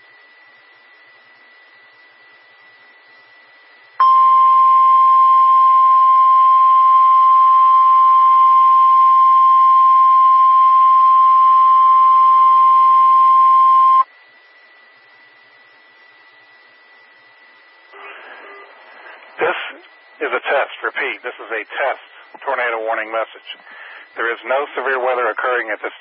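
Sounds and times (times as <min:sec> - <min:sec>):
steady alarm tone: 0:00.1 - 0:25.4
faint radio hiss: 0:12.5 - 0:26.0.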